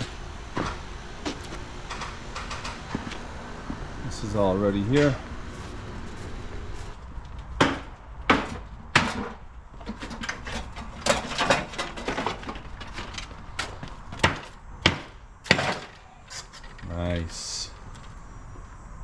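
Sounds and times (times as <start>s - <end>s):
hammer striking wood: 7.6s - 9.4s, 14.2s - 15.9s.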